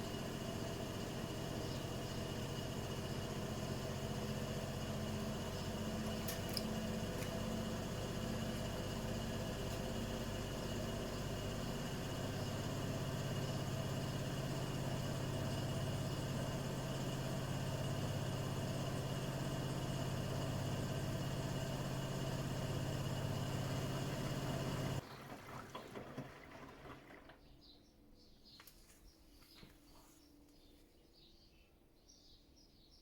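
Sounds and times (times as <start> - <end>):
washing machine humming: 0.0 - 28.0.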